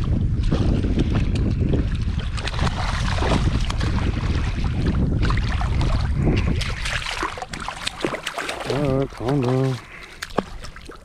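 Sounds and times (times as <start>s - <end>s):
wind buffeting microphone: 0.0s - 10.9s.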